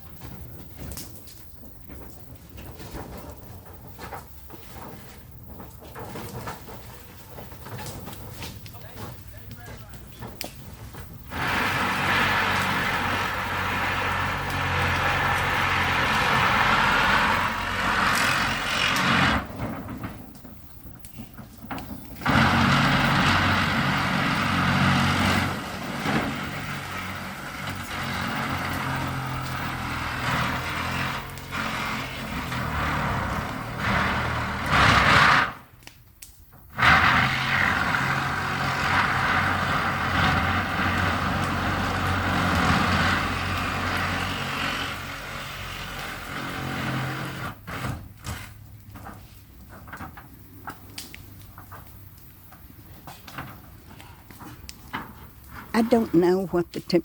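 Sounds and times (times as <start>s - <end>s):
heavy machinery engine running: 1.6s - 20.8s, 21.6s - 35.7s, 36.7s - 47.8s.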